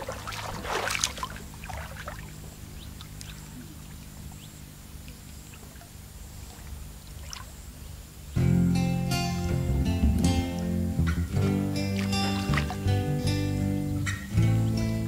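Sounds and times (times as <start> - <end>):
water sloshing and splashing: 0.0 - 8.0, 11.3 - 13.2
water dripping: 9.5 - 14.4.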